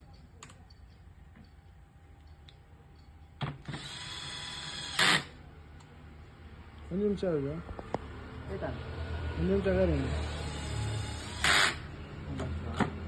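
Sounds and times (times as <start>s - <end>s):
small motor whirring: 3.6s - 5.4s, 9.6s - 12.0s.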